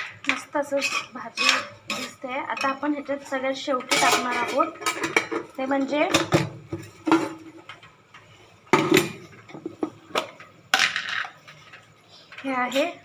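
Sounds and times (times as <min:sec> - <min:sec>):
kitchen utensils clinking: 0:00.0 - 0:08.0, 0:08.7 - 0:13.0.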